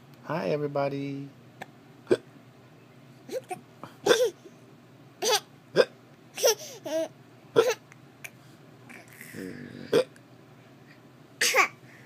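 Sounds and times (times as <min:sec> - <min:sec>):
person hiccuping: 0:02.1 - 0:02.3, 0:03.3 - 0:04.4, 0:05.7 - 0:06.0, 0:07.6 - 0:07.8, 0:09.0 - 0:10.2.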